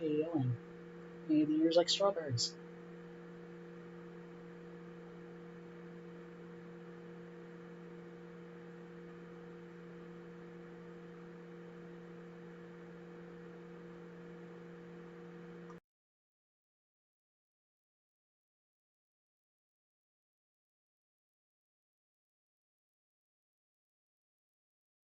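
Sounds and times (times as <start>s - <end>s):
electrical mains hum: 0.0s - 15.8s.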